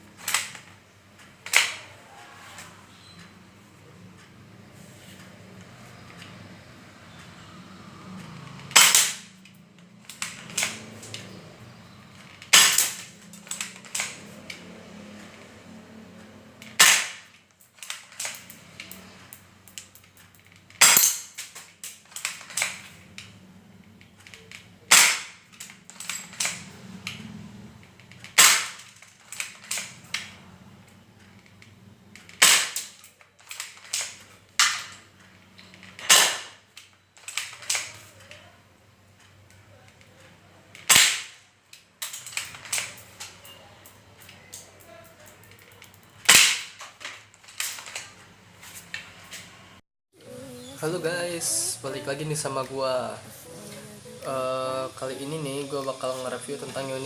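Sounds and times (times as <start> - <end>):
airsoft gun shots: 8.7 - 9.3, 12.5 - 13.0, 16.8 - 17.3, 24.9 - 25.4, 28.4 - 28.8, 32.4 - 32.9, 36.0 - 36.6, 40.9 - 41.4, 46.3 - 46.8.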